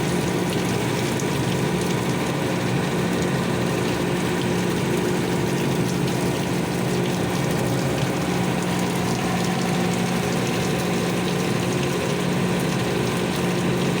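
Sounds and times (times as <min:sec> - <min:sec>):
heavy rain falling: 0:05.2 - 0:14.0.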